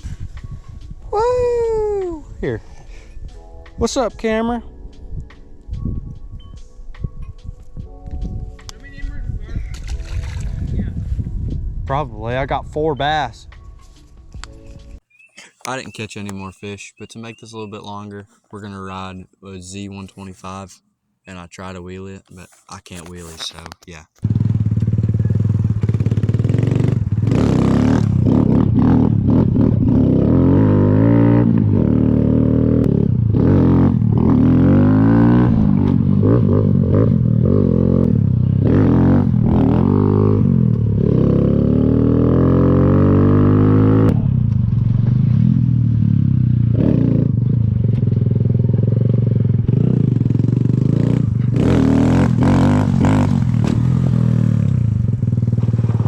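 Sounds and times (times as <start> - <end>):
motorcycle engine revving: 24.2 - 56.0.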